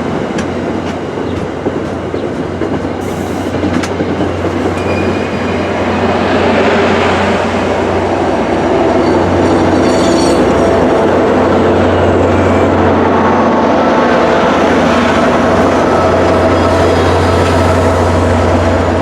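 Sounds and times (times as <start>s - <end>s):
train wheels rumbling on rail: 0.0s - 19.0s
high-pitched squeal: 4.6s - 5.7s, 8.8s - 12.8s.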